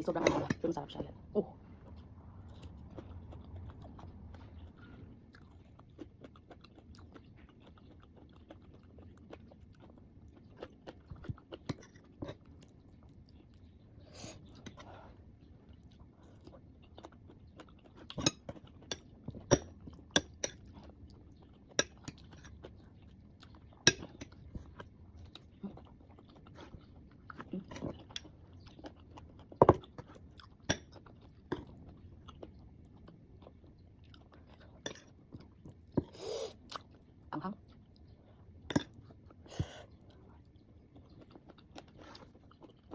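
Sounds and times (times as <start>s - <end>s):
crunchy chewing: 1.8s - 42.9s.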